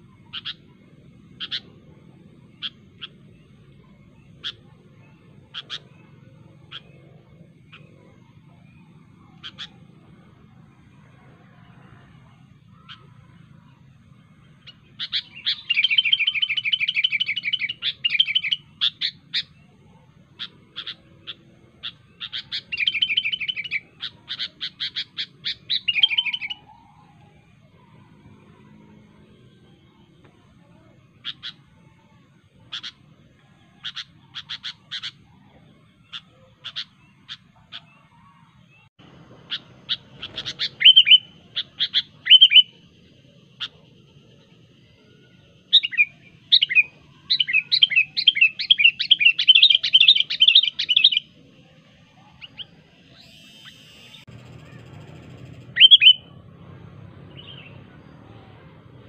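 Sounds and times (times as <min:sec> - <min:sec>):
bulbul calling: 0:00.0 - 0:11.8, 0:12.6 - 0:28.7, 0:29.9 - 0:56.4.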